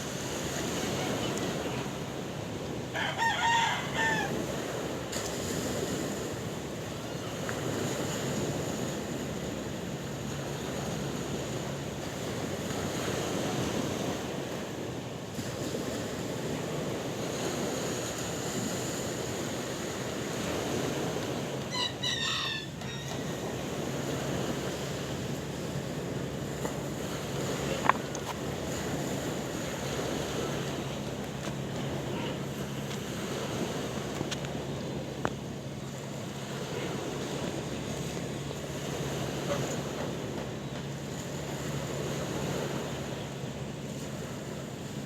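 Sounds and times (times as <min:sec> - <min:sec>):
sea waves washing: 0:00.0 - 0:45.0
wind: 0:00.0 - 0:45.0
short pitched animal call: 0:21.7 - 0:23.2.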